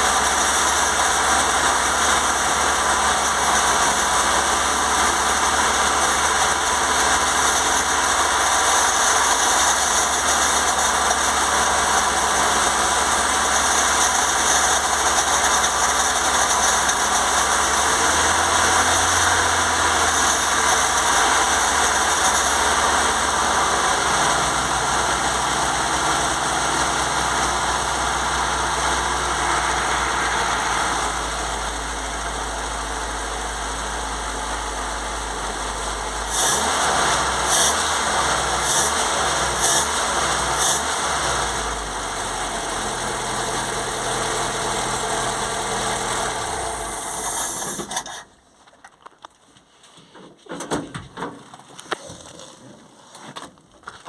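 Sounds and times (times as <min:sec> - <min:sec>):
petrol engine idling: 0:00.0 - 0:36.3.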